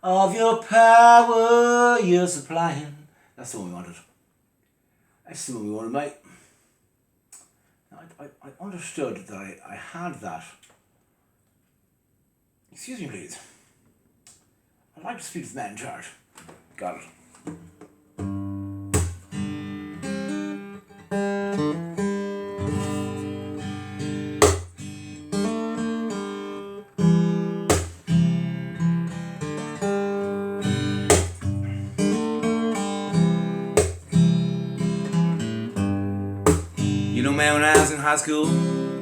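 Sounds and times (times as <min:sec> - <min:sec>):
acoustic guitar strumming: 0:17.5 - 0:39.0.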